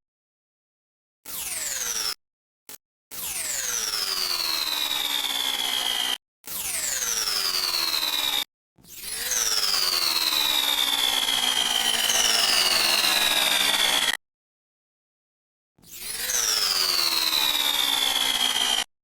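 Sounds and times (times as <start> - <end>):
blender motor whining: 9.1 - 14.2, 16.1 - 18.9.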